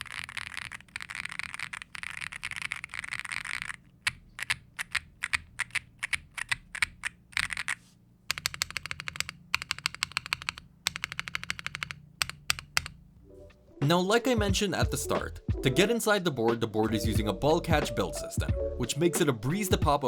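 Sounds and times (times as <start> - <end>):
mechanical keyboard typing: 0.0 - 13.0.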